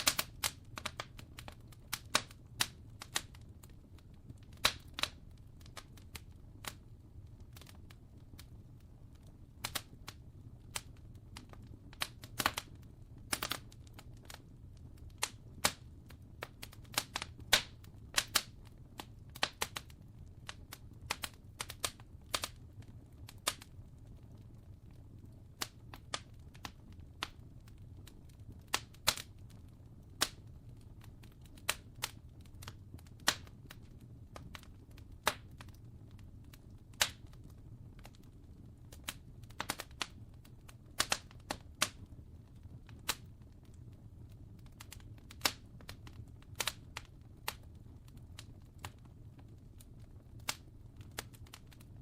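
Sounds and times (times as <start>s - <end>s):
wood fire crackling: 0.0s - 52.0s.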